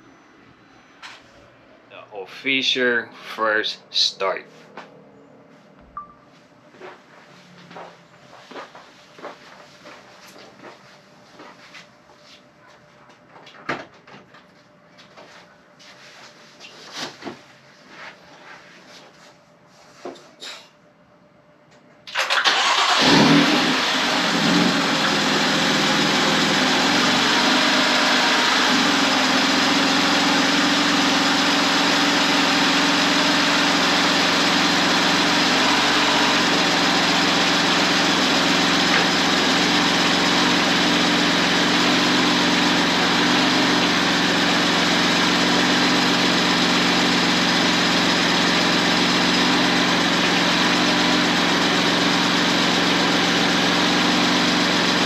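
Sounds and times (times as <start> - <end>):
car engine starting and idling: 22.0 - 55.0.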